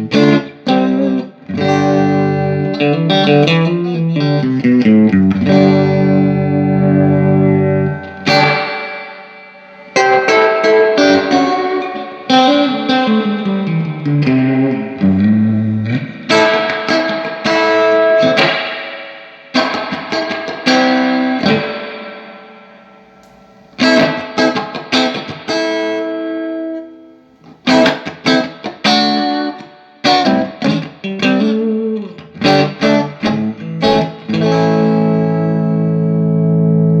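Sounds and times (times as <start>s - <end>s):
electric guitar chords: 0.0s - 37.0s.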